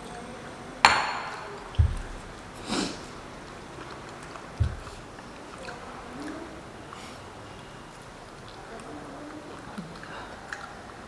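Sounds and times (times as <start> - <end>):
dull low thumps: 0.9 - 3.7, 4.5 - 5.3.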